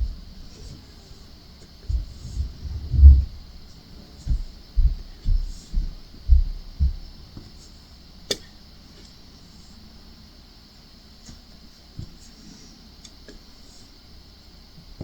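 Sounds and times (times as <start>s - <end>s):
sharp click: 8.3s - 8.5s.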